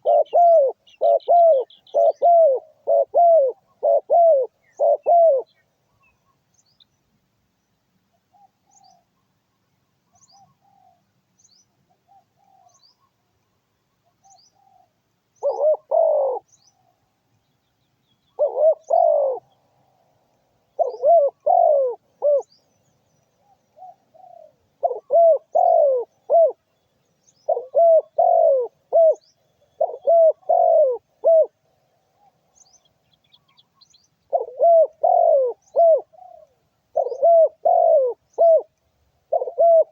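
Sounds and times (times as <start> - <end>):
dove cooing loudly: 0.0 - 5.6, 14.5 - 16.5, 18.4 - 19.6, 20.8 - 22.5, 23.4 - 26.7, 27.5 - 31.6, 34.3 - 38.7, 39.3 - 39.9
fainter dove cooing: 0.0 - 5.6, 14.1 - 17.0, 18.4 - 19.6, 20.8 - 22.6, 23.4 - 26.6, 27.4 - 32.5, 34.3 - 38.7, 39.3 - 39.9
small birds chirping: 0.0 - 39.9.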